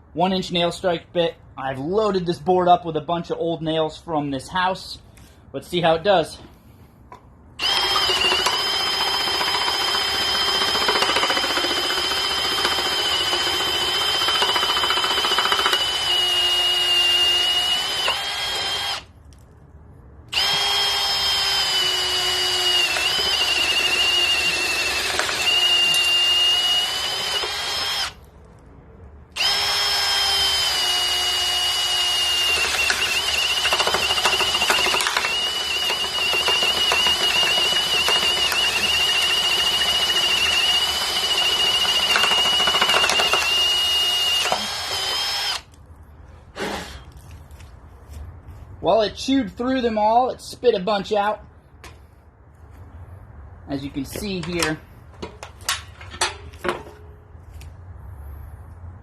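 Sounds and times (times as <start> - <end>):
hammer drill boring through wood: 7.6 - 19.1, 20.3 - 28.2, 29.4 - 45.8.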